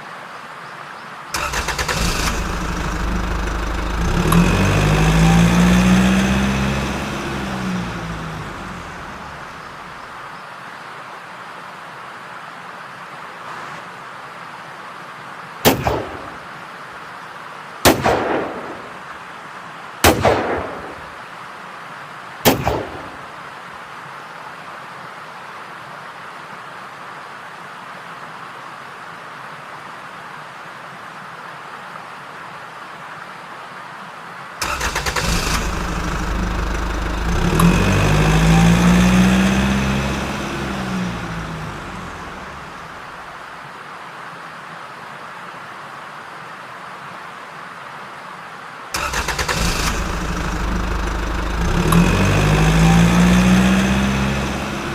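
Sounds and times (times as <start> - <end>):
engine-like revving: 1.4 - 10.0, 34.6 - 43.3, 49.0 - 54.9
sharp bangs with ringing tail: 15.7 - 16.3.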